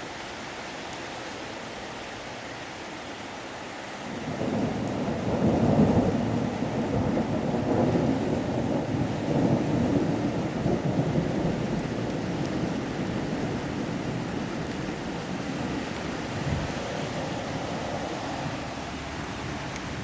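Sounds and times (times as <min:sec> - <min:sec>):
steady rain: 0:00.0 - 0:20.0
rolling thunder: 0:04.2 - 0:18.6.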